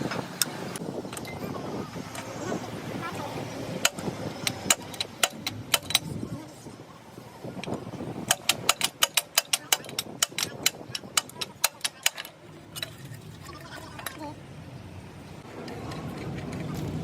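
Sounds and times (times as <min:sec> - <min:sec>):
hand tools clicking on metal: 0:03.8 - 0:06.2, 0:07.6 - 0:13.0.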